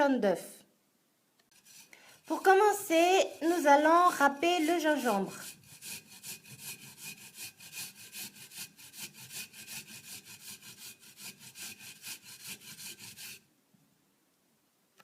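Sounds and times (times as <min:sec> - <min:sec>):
ginger grated on a grater: 0:01.5 - 0:13.4.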